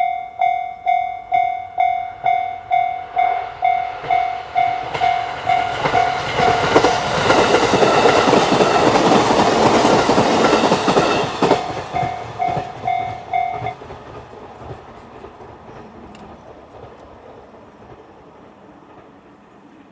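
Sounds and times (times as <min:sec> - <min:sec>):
level crossing bell ringing: 0:00.0 - 0:07.0, 0:11.6 - 0:13.8
electric train rushing past: 0:00.0 - 0:19.9
wheels clicking on rail joints: 0:00.4 - 0:19.6.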